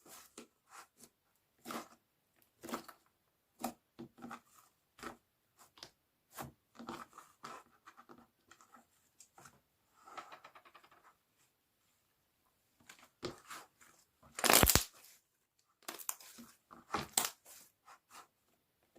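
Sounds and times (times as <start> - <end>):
slime sticky clicks and pops: 14.4 - 14.9.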